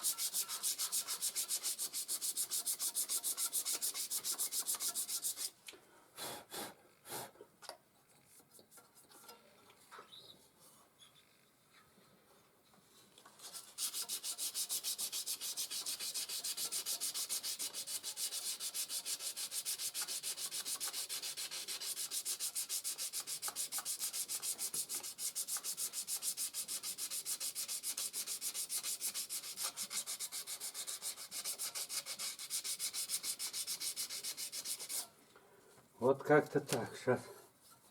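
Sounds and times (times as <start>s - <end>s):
sandpaper rubbing on metal: 0.0s - 5.6s, 13.4s - 35.1s.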